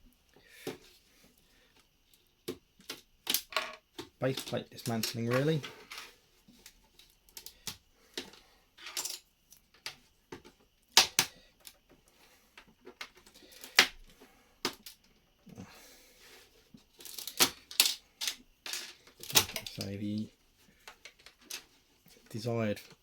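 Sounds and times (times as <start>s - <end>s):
plastic bricks clicking and clattering: 2.8s - 6.1s, 17.0s - 20.3s.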